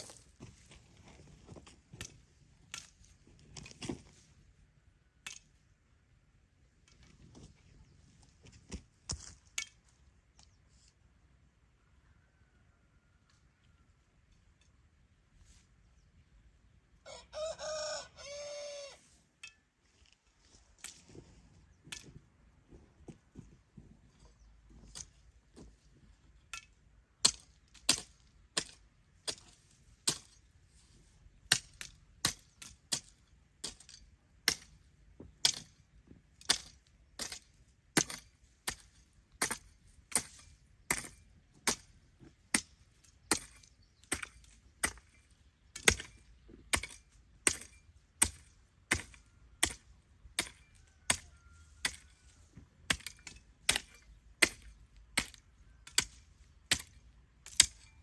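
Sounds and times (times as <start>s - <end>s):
hoe striking the ground: 1.9s - 4.0s, 26.4s - 30.5s, 31.4s - 58.0s.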